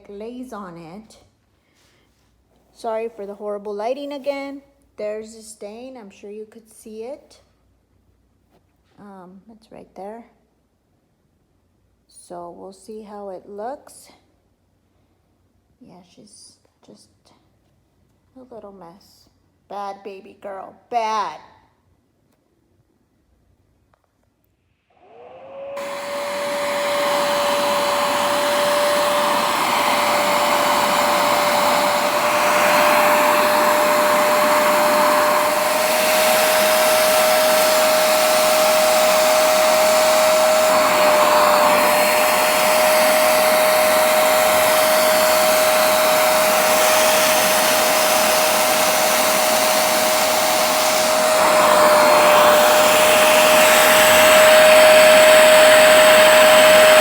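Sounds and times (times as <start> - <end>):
carpet cleaner motor whine: 25.0 - 57.0
suction noise: 25.0 - 57.0.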